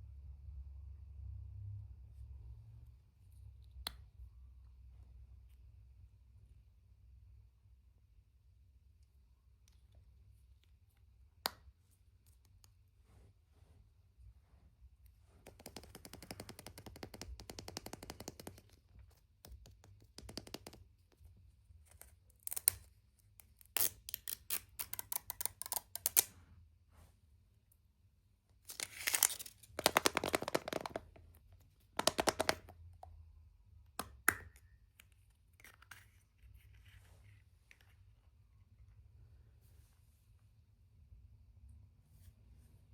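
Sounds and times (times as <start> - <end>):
wrapper rustling and crinkling: 28.7 - 30.0.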